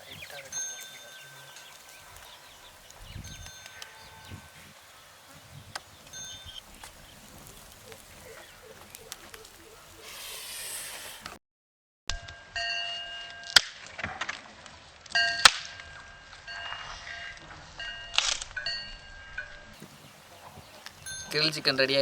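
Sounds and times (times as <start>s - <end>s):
bell-like metallic dings: 0.3s - 2.2s, 3.2s - 4.5s, 6.1s - 6.6s, 12.2s - 13.5s, 15.2s - 19.8s, 21.0s - 22.0s
short hiss: 10.0s - 11.4s.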